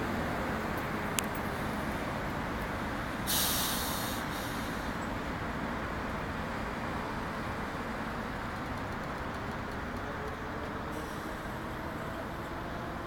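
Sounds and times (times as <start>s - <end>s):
air brakes hissing: 3.2s - 5.0s, 11.0s - 11.6s.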